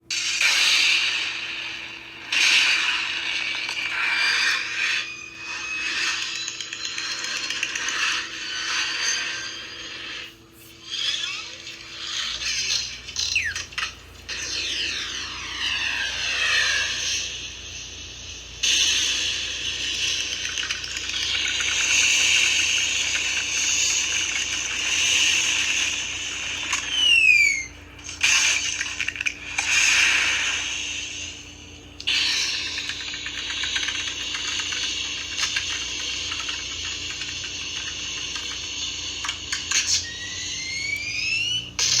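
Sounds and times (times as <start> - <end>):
toy clicks: 32.0 - 40.2
rising whistle: 40.0 - 41.7.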